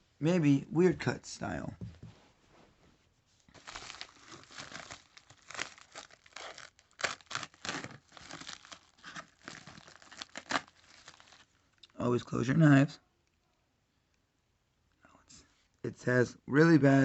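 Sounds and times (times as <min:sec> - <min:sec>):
package tearing and crinkling: 0:03.5 - 0:11.6.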